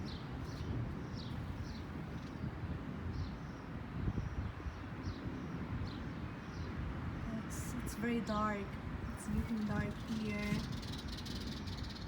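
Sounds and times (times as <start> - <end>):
wind rumbling on microphone: 0.0 - 12.0
bird chirping: 9.2 - 12.0.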